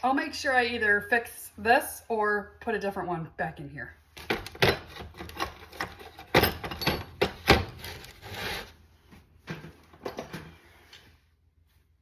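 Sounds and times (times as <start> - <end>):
hard objects knocking and clacking: 4.2 - 7.8.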